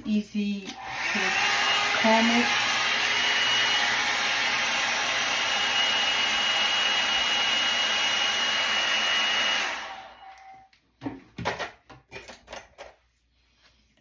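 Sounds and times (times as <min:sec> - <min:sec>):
hair dryer blowing: 0:00.6 - 0:10.7.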